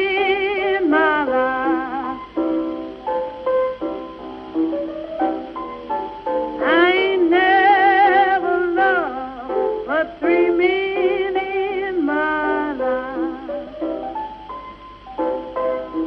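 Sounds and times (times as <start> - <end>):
person singing with vibrato: 0.0 - 2.4, 6.4 - 14.0
piano accompaniment: 0.0 - 16.0.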